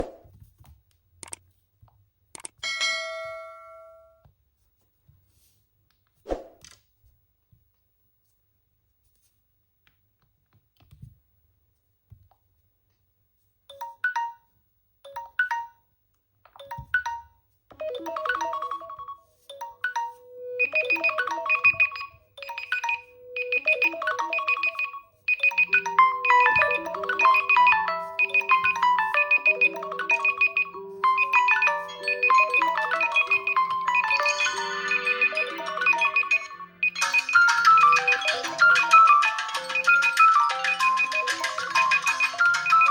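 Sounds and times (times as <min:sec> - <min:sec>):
phone alarm chimes: 0:16.6 - 0:42.9
overlapping alarm melodies: 0:16.7 - 0:42.9.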